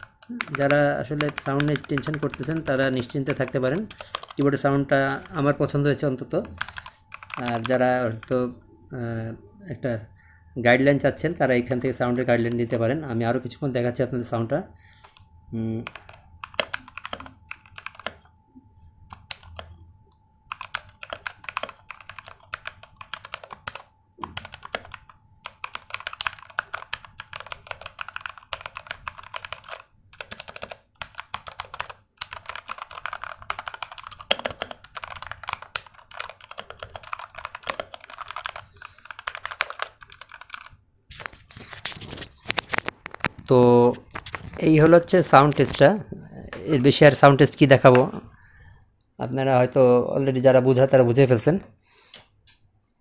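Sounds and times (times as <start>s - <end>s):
mechanical keyboard typing: 0.0s - 8.4s, 15.8s - 18.2s, 19.1s - 19.7s, 20.5s - 40.8s.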